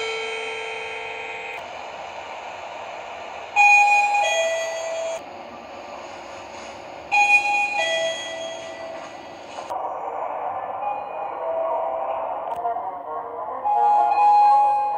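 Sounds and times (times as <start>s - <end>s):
elevator ding-dong chime: 0.0s - 1.5s, 3.6s - 5.2s, 7.1s - 9.1s
steady background noise: 0.0s - 14.9s.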